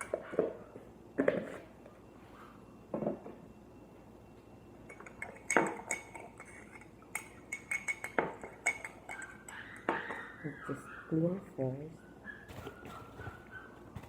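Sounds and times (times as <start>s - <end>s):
spoon clinking against container: 4.9s - 10.3s.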